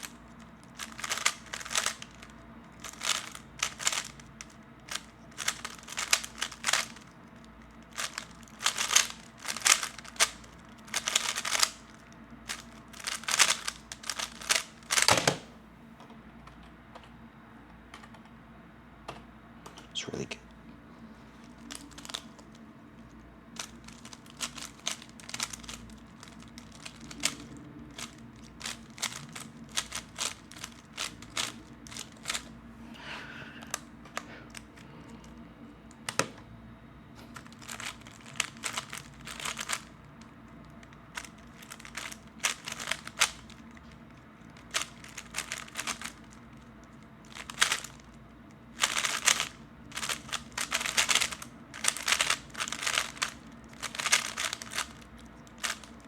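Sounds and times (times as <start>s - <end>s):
speed cube clicking and rattling: 0.0s - 15.4s, 21.4s - 32.5s, 37.4s - 56.0s.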